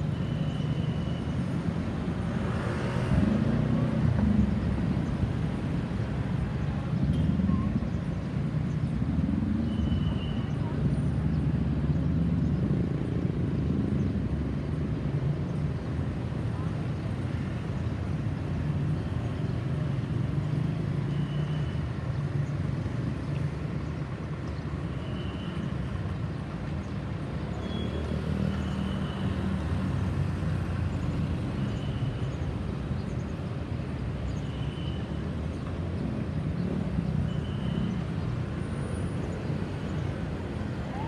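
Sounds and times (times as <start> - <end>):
road traffic rumble: 0.0 - 41.0.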